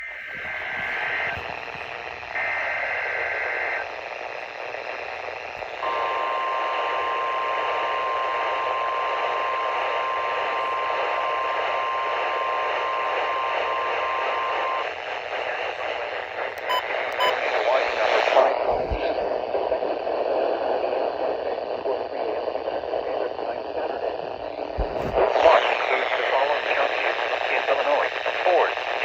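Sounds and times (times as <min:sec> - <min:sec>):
radio static: 0:00.0 - 0:29.0
steady warning alarm tone: 0:05.8 - 0:14.9.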